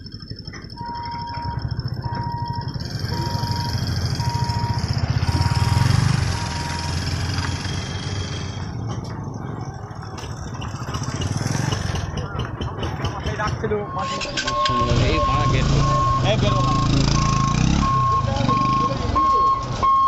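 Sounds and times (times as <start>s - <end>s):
level crossing warning beep: 0.7s - 8.7s, 13.3s - 20.0s.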